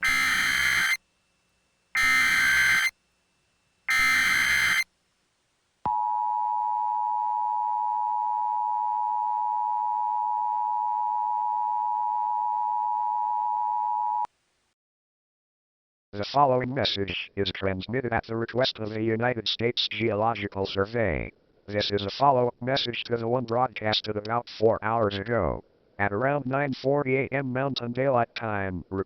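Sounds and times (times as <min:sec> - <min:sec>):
digital data bursts: 0:00.0 - 0:01.0, 0:02.0 - 0:02.9, 0:03.9 - 0:04.9
two-tone attention signal: 0:00.0 - 0:01.0, 0:02.0 - 0:02.9, 0:03.9 - 0:04.8.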